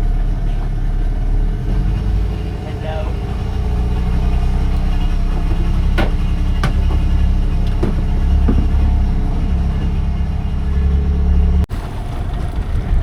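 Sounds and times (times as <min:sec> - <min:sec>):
boat motor running: 0:00.0 - 0:13.0
sharp knocks: 0:05.4 - 0:09.3.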